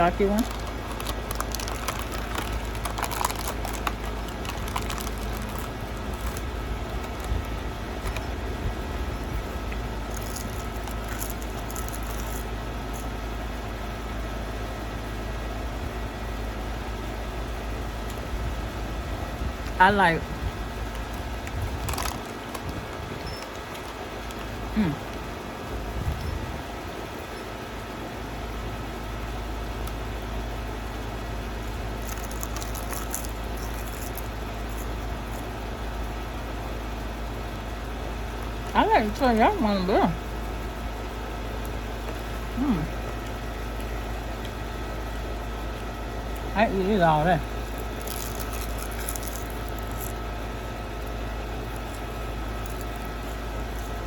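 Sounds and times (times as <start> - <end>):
low background rumble: 0.0 - 54.0
low mechanical hum: 0.0 - 54.0
crispy snack being chewed: 0.4 - 8.4, 9.3 - 13.1, 20.7 - 25.2, 31.5 - 35.8, 47.4 - 54.0.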